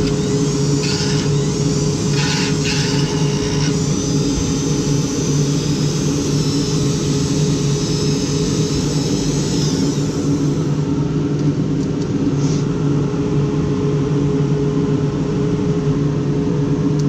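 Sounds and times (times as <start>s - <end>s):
rotary tool cutting plastic: 0.0s - 10.9s.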